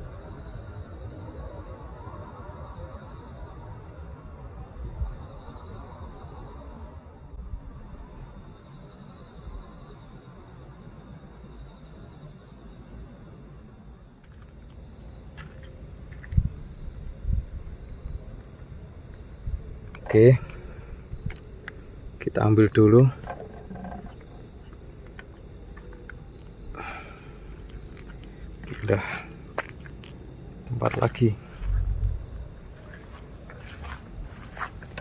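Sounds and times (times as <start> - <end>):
fast pulsed insect chirps: 0.0 - 33.5
crickets trilling: 0.0 - 35.0
low rumble: 31.5 - 32.6.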